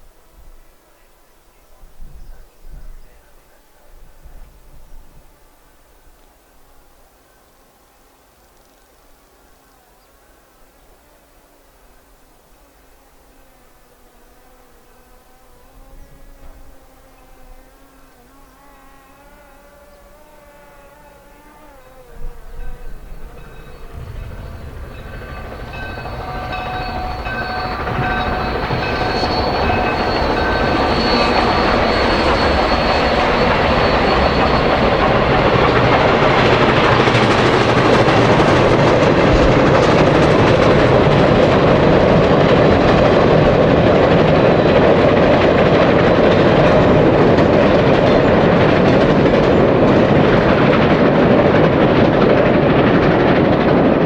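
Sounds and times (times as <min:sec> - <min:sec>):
steam locomotive passing: 0:00.0 - 0:54.0
wheels clattering on rails: 0:12.4 - 0:54.0.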